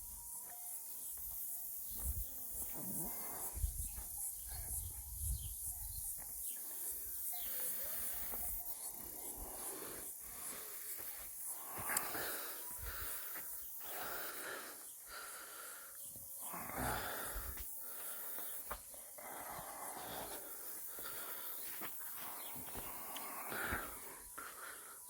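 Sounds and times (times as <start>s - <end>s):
person breathing hard wheezily: 6.8s - 25.0s.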